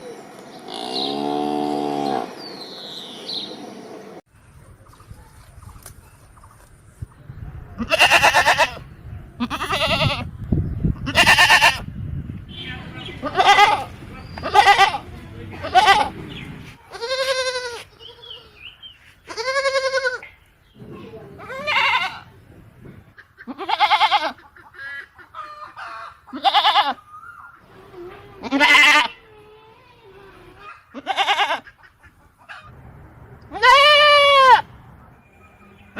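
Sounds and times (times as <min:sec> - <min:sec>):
goats bleating: 0:07.8 - 0:08.8, 0:09.4 - 0:10.3, 0:11.1 - 0:11.8, 0:13.2 - 0:16.2, 0:16.9 - 0:18.4, 0:19.3 - 0:20.3, 0:21.4 - 0:22.3, 0:23.4 - 0:24.4, 0:26.3 - 0:27.0, 0:28.4 - 0:29.2, 0:30.9 - 0:31.7, 0:33.5 - 0:34.7.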